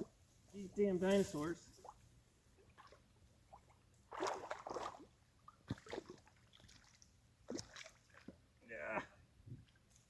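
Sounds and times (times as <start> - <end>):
river water splashing: 0.7 - 8.8.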